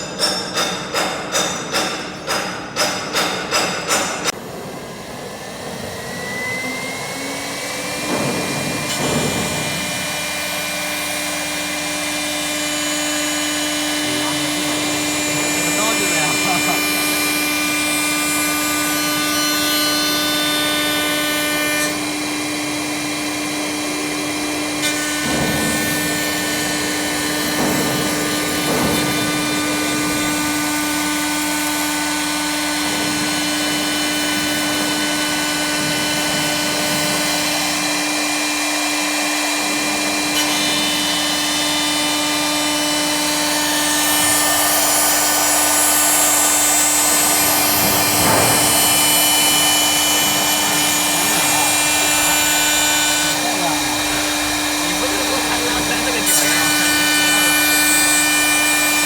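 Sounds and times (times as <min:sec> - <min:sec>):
lathe motors whining: 0:04.2 - 0:59.0
rough cutting noise: 0:07.8 - 0:59.0.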